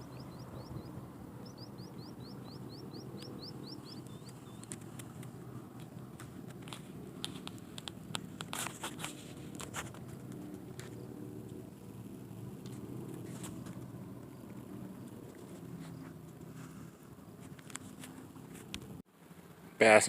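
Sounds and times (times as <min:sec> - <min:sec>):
outdoor background noise: 0:00.0 - 0:20.0.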